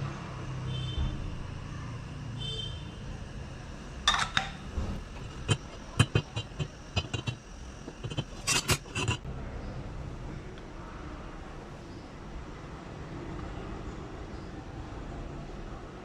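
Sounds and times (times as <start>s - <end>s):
steady low hum: 1.2s - 13.0s
kitchen utensils clinking: 4.1s - 9.2s.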